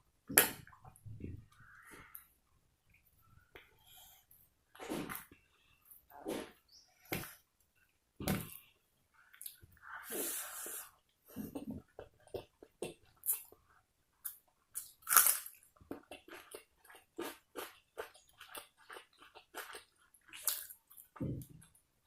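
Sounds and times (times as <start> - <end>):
person chewing food: 11.8 - 21.8.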